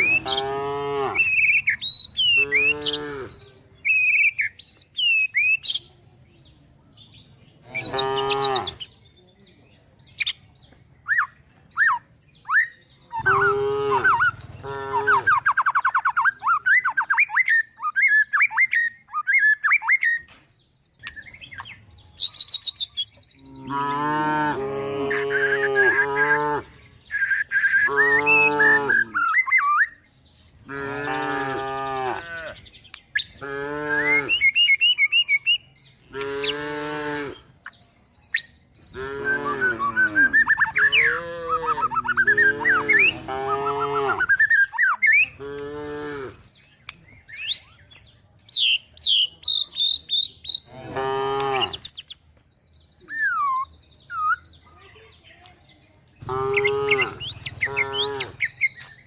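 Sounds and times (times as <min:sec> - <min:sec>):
cows mooing: 0:00.0 - 0:01.3, 0:02.4 - 0:03.5, 0:07.7 - 0:08.8, 0:13.2 - 0:15.4, 0:23.5 - 0:26.7, 0:27.9 - 0:29.2, 0:30.6 - 0:32.6, 0:33.4 - 0:34.4, 0:36.1 - 0:37.4, 0:39.0 - 0:44.4, 0:45.4 - 0:46.4, 0:50.7 - 0:51.8, 0:56.2 - 0:58.4
small birds chirping: 0:00.0 - 0:59.0.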